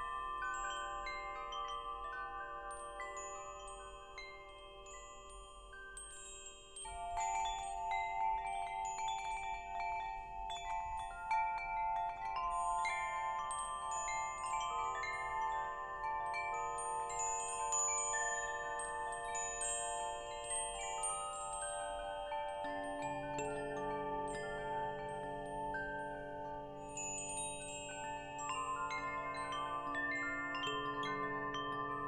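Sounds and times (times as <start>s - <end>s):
wind chimes ringing: 0.0s - 32.0s.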